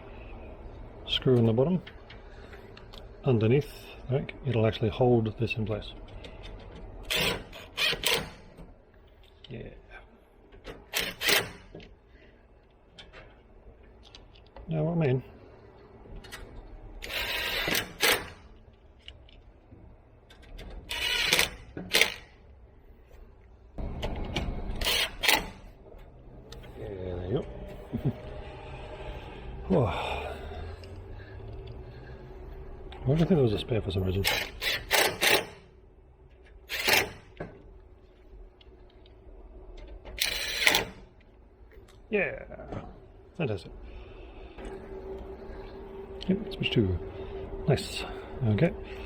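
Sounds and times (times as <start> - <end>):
drill driving a screw: 7.1 - 8.4, 17.0 - 18.4, 20.9 - 22.2, 24.8 - 25.5, 34.3 - 35.5, 36.7 - 37.2, 40.2 - 41.0.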